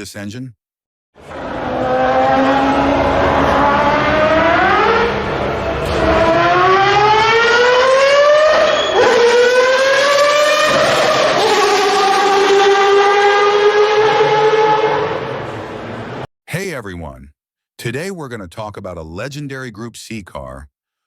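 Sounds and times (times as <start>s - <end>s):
racing engine screaming: 1.2s - 15.5s.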